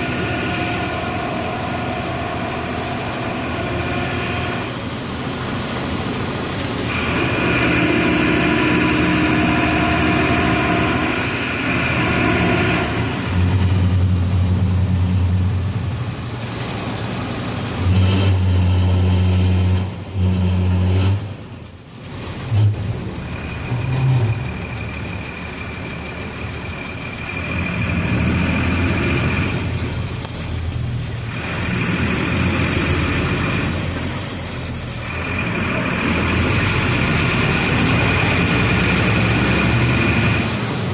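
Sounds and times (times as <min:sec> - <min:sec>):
bus engine running: 0:00.0 - 0:40.9.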